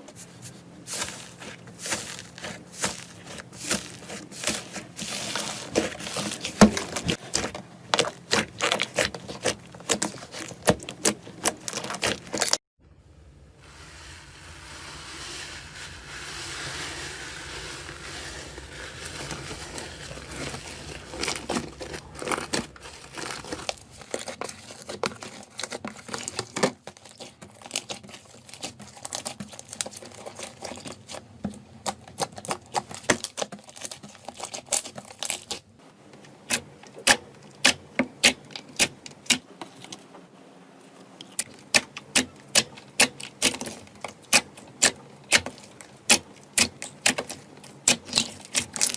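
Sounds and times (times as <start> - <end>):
slime squishing: 0.0 - 12.6, 13.7 - 35.7, 41.2 - 48.9
sticky crackles and pops: 41.4 - 48.9.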